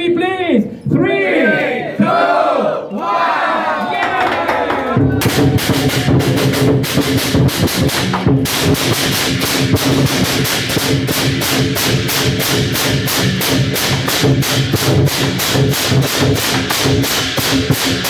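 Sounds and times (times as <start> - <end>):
crowd shouting and cheering: 0.8 - 8.3
festive percussion: 2.9 - 18.0.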